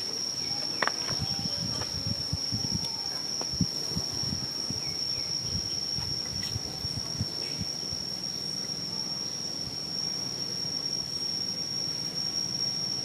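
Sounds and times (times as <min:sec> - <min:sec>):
high-pitched insect drone: 0:00.0 - 0:13.0.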